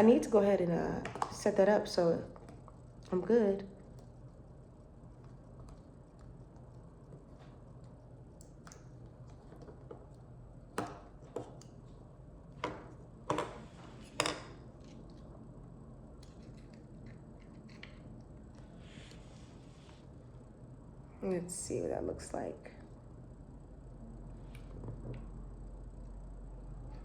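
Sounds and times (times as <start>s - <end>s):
faint low hum: 0.0s - 27.0s.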